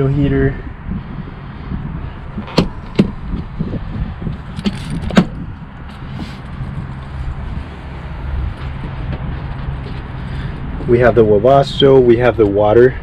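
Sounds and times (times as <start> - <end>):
low hum: 0.0 - 11.8
sharp clicks and knocks: 2.4 - 3.5, 4.3 - 6.4.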